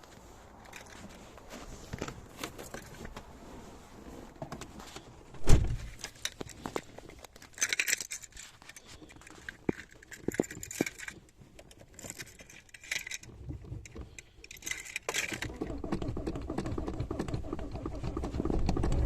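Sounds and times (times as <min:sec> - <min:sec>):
heavy thump: 0:05.4 - 0:06.0
car keys jangling: 0:05.8 - 0:15.5.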